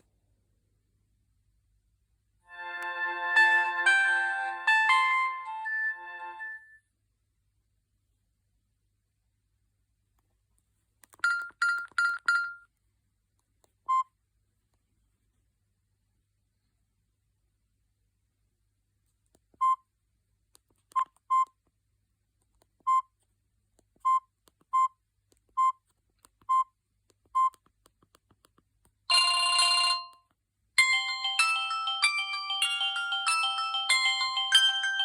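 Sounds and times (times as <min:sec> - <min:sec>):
ringtone melody: 0:02.5 - 0:06.8, 0:30.8 - 0:35.0.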